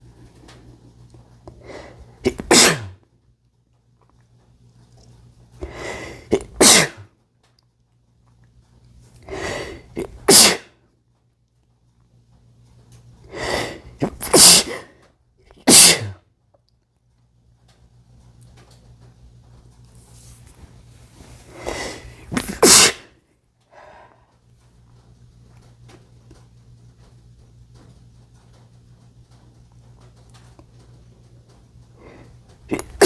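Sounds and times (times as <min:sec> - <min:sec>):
man sneezing: 0:02.2 - 0:03.0, 0:06.3 - 0:07.0, 0:10.0 - 0:10.7, 0:14.0 - 0:14.9, 0:15.7 - 0:16.2, 0:21.9 - 0:23.1.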